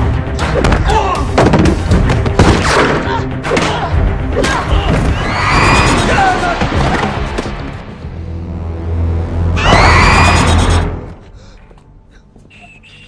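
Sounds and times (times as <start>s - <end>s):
dramatic music score: 0.0s - 13.0s.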